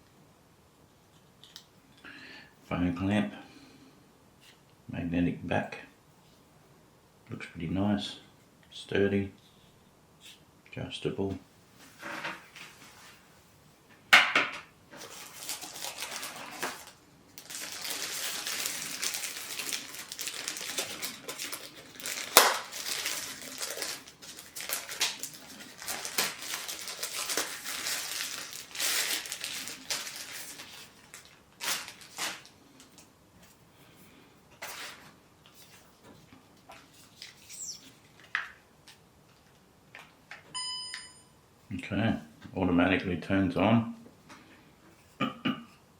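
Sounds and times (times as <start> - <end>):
packaging rustling: 14.9 - 33.1.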